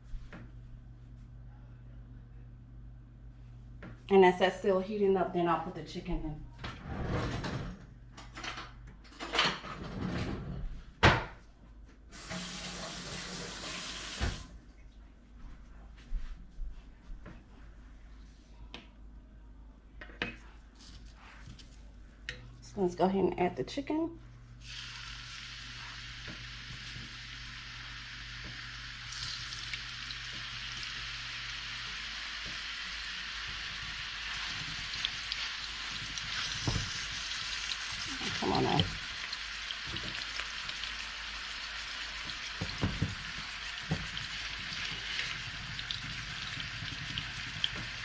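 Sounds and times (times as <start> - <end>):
chicken sizzling in hot oil: 12.2 - 14.3, 24.6 - 48.0
kitchen tap running: 12.2 - 14.5, 24.6 - 48.0.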